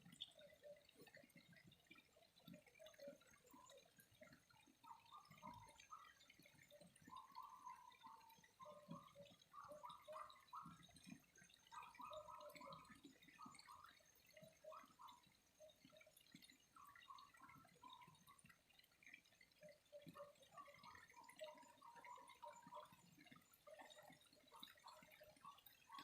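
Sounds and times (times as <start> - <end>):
water trickling and dripping: 0.0 - 26.0.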